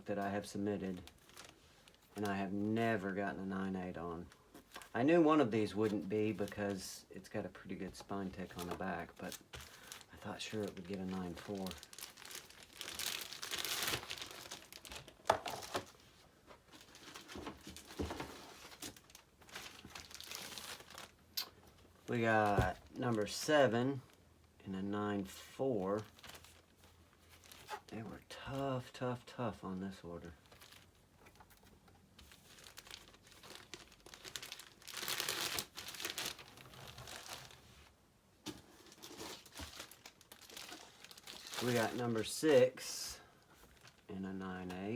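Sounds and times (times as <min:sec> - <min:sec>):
plastic packaging crinkling: 0:00.8 - 0:02.4, 0:08.3 - 0:16.0, 0:16.7 - 0:21.2, 0:26.0 - 0:27.9, 0:30.4 - 0:37.9, 0:38.5 - 0:42.8, 0:43.6 - 0:44.1.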